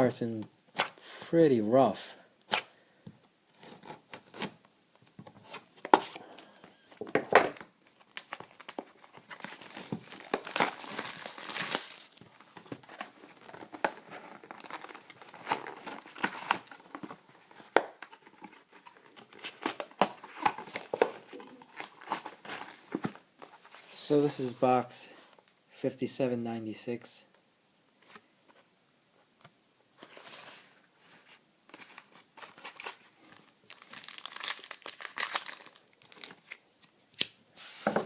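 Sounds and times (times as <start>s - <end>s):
plastic wrapping crinkling: 6.1s - 23.7s, 31.7s - 36.9s
plastic wrapping tearing: 7.8s - 12.2s, 13.3s - 17.0s, 33.7s - 36.6s.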